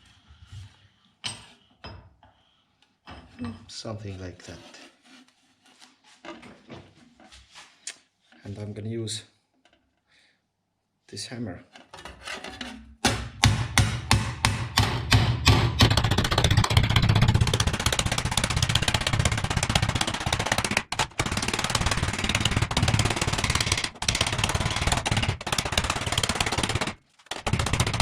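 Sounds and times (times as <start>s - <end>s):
hammer striking sheet metal: 13.1s - 28.0s.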